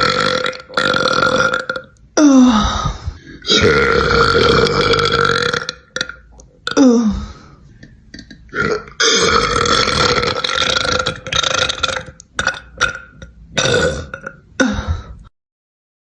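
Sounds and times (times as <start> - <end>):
woman burping loudly: 0.0 - 2.6, 3.4 - 7.2, 8.1 - 15.1.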